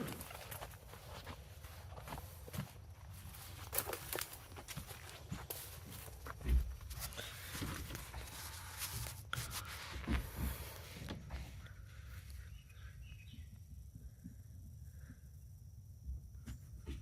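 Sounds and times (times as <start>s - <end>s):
rustling and handling noise: 0.0s - 12.3s
footsteps outdoors: 0.0s - 12.4s.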